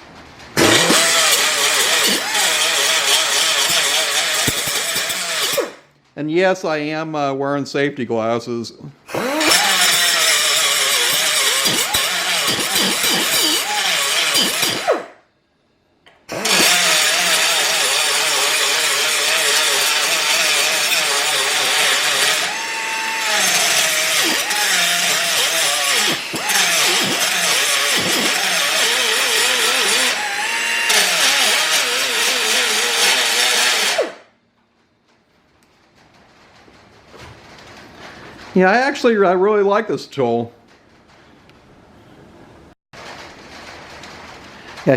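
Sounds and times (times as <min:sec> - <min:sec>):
pneumatic cut-off tool whining: 0:00.6 - 0:05.8, 0:09.1 - 0:15.2, 0:16.3 - 0:34.2.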